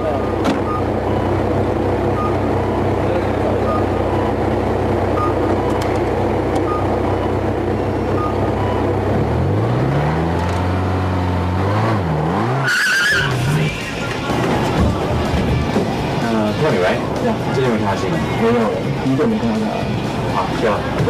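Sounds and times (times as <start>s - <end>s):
car engine revving: 0.0s - 21.0s
tyre squeal: 12.5s - 14.1s.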